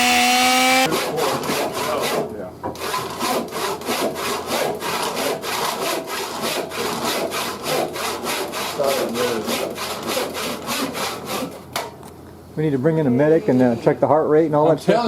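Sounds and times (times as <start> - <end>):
hand saw cutting wood: 0.0 - 11.6.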